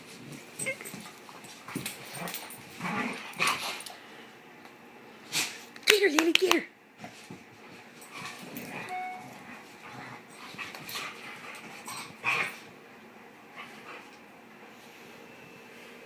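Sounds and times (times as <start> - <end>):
dogs scuffling: 0.0 - 3.9, 7.0 - 12.8
dog noises and whine: 8.0 - 12.7.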